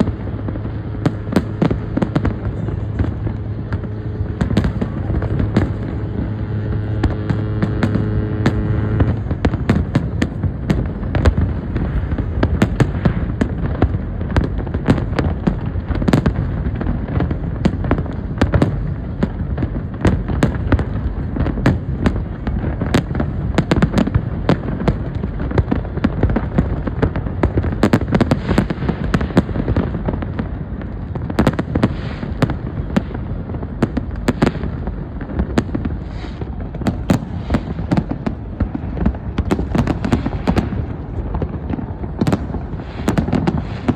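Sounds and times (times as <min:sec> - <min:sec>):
low rumble: 0:00.0 - 0:16.0
fireworks bangs and crackles: 0:00.0 - 0:43.9.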